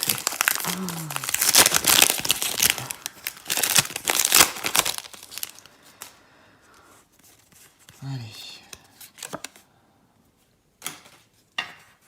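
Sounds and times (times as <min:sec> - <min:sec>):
foil wrapper crinkling and tearing: 0:00.0 - 0:06.2.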